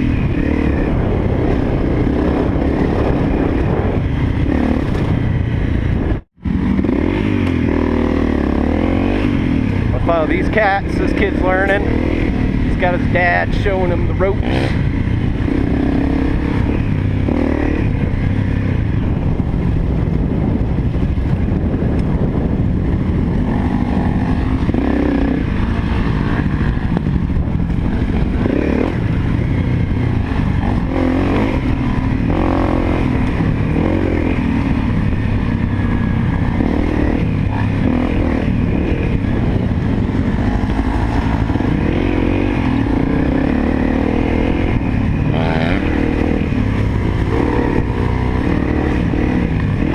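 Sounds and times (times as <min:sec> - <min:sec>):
dirt bike engine running: 0:00.0 - 0:49.9
wind on helmet microphone: 0:00.0 - 0:49.9.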